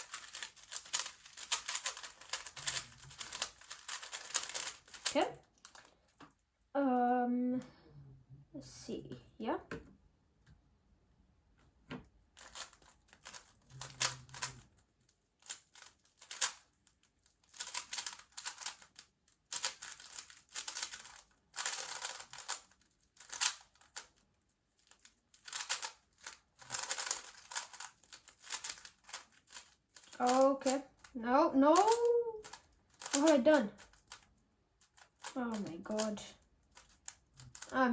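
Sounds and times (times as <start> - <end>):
puzzle cube clicking: 0.0 - 5.8, 12.4 - 14.6, 15.4 - 16.6, 17.5 - 24.1, 24.8 - 31.1, 31.8 - 34.2, 34.8 - 36.2, 36.8 - 37.7.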